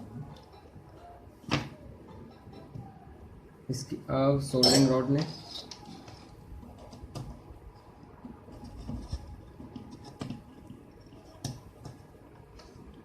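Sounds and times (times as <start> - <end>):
scratching and handling small tools: 4.6 - 12.8.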